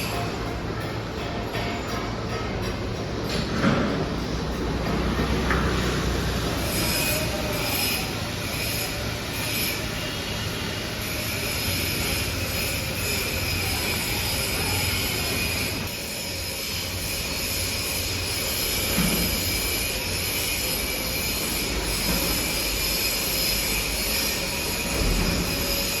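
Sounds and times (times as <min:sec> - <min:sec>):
forging press machinery running: 0:00.0 - 0:26.0.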